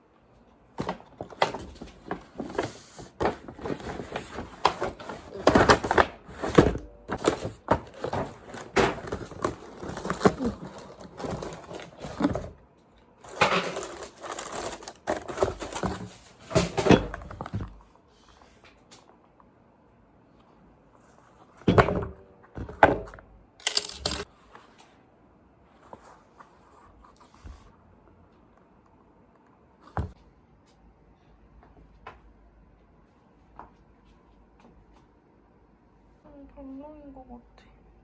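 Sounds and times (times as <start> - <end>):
rustling and crinkling: 0.7 - 19.0.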